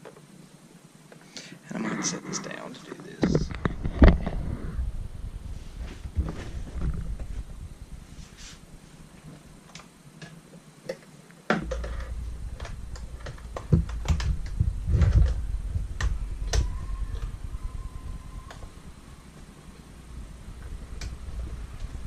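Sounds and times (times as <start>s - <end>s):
low handling rumble: 3.3s - 9.6s, 11.6s - 22.0s.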